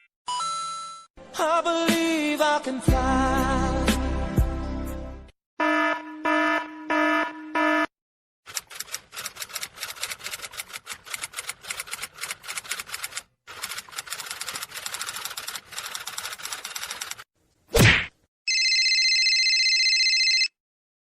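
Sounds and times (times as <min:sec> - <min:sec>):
rapid keyboard typing: 0:08.5 - 0:17.3.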